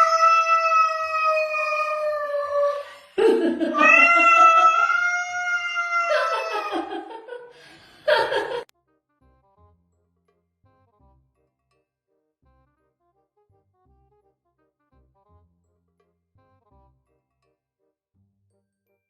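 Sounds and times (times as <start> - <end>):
cat yowling: 0.0 - 7.4.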